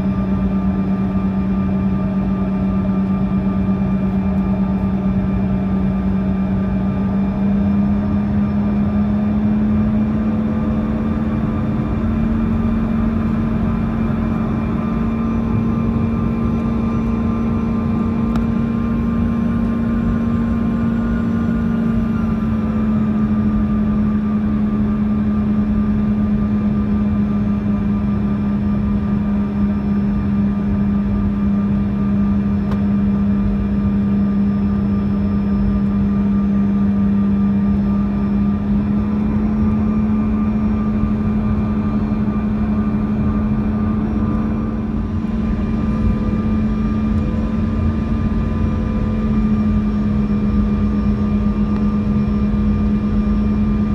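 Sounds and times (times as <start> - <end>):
jet engines humming in cabin: 0.0 - 53.9
low rumble: 38.6 - 53.9.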